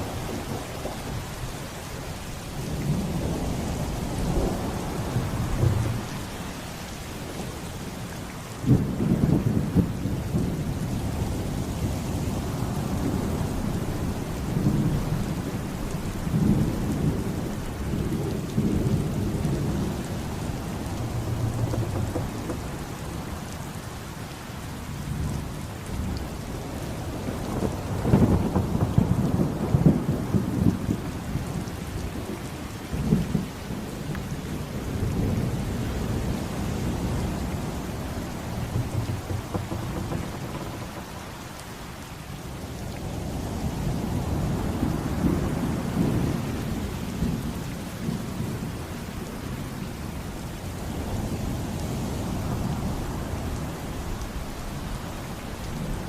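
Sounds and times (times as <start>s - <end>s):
heavy rain: 0.0s - 56.0s
rolling thunder: 2.6s - 7.8s, 8.6s - 24.2s, 25.0s - 32.4s, 33.0s - 47.5s
loud thunder claps: 2.8s - 7.5s, 12.9s - 23.8s, 27.1s - 31.5s, 33.0s - 42.0s.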